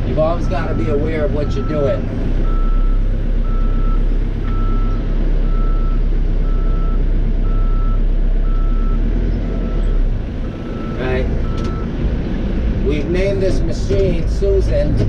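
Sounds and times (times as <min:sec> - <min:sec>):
diesel engine rumble: 0:00.0 - 0:15.0
reverse alarm beeping: 0:00.4 - 0:09.0, 0:10.4 - 0:11.9.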